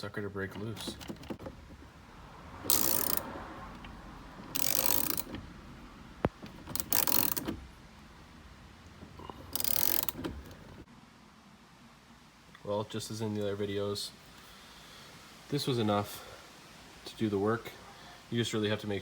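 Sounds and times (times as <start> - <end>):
ratchet wrench clicking: 2.7 - 5.4, 6.7 - 7.6, 9.5 - 10.6.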